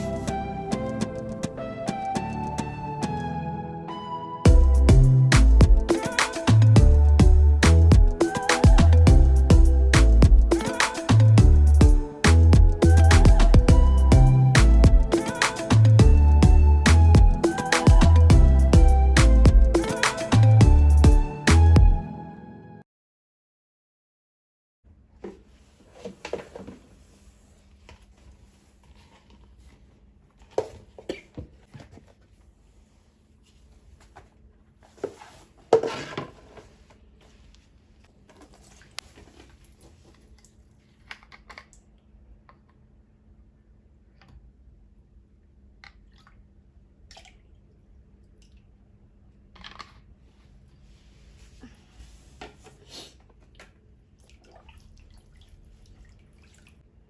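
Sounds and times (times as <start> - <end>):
wet pillow squishing and splashing: 53.6 - 56.8.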